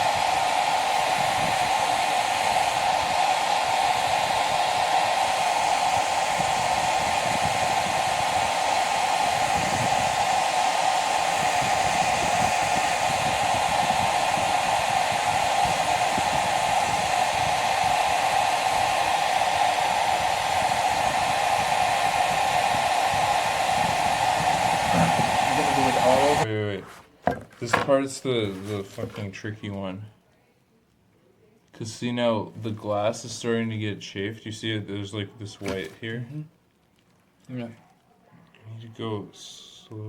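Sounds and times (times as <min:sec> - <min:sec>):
hot-air blower whooshing: 0:00.0 - 0:26.5.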